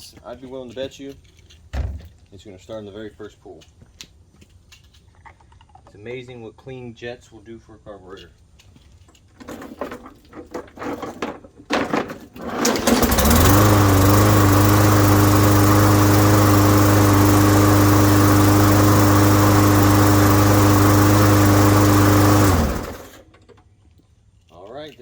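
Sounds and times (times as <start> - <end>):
knocks and clatters: 8.7 - 13.5
lawn mower engine running: 11.8 - 23.6.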